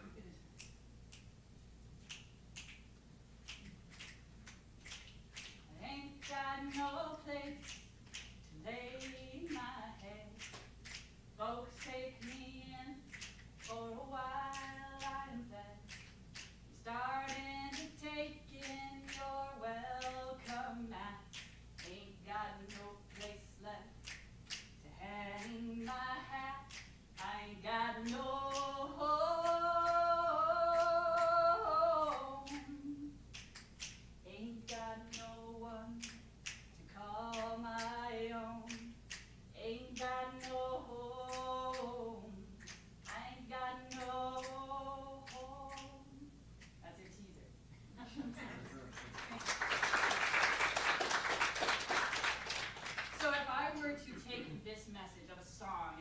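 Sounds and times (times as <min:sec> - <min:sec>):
finger snaps: 0:00.5 - 0:01.4, 0:02.0 - 0:05.6, 0:07.6 - 0:08.4, 0:13.0 - 0:13.8, 0:15.9 - 0:16.6, 0:17.2 - 0:18.0, 0:24.0 - 0:24.8, 0:32.1 - 0:34.1, 0:34.7 - 0:38.0, 0:38.6 - 0:40.6, 0:41.2 - 0:41.9, 0:42.6 - 0:43.2, 0:43.9 - 0:44.6, 0:45.2 - 0:46.0
woman singing unaccompanied: 0:05.6 - 0:10.7, 0:11.4 - 0:16.2, 0:16.8 - 0:24.2, 0:24.8 - 0:33.2, 0:34.2 - 0:46.4
sharp clicks keeping time: 0:11.7 - 0:16.6, 0:17.2 - 0:19.3, 0:28.0 - 0:28.8, 0:34.7 - 0:35.4, 0:43.9 - 0:44.6, 0:45.2 - 0:46.0.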